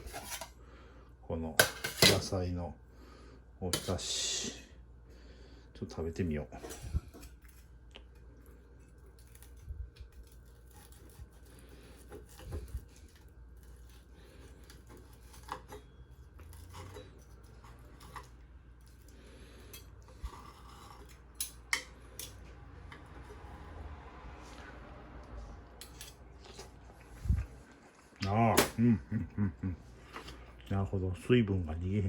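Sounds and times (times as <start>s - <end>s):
utensils scraping a dish: 0.0s - 0.5s, 10.7s - 18.4s, 19.4s - 23.7s.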